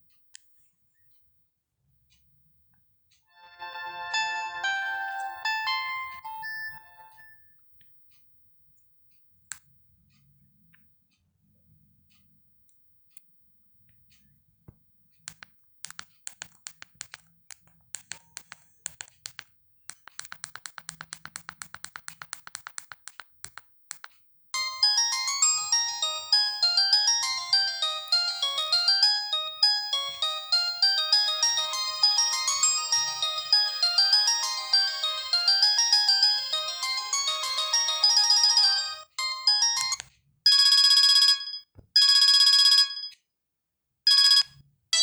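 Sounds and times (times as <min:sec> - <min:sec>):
phone ringtone melody: 0:03.3 - 0:07.4, 0:24.6 - 0:43.2, 0:44.1 - 0:45.0
sharp clicks: 0:15.3 - 0:24.2
fast even ticking: 0:15.4 - 0:40.0.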